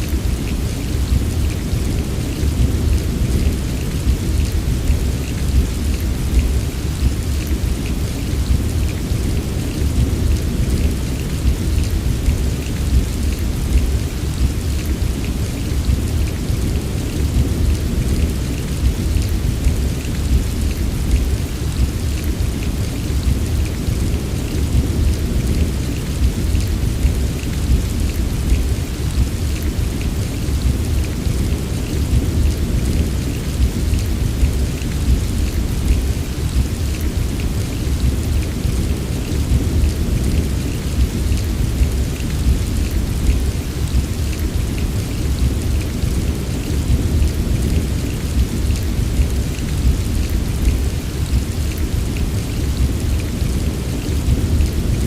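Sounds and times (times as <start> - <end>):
heavy rain pouring: 0.0 - 55.0
raindrop ticks: 0.1 - 55.0.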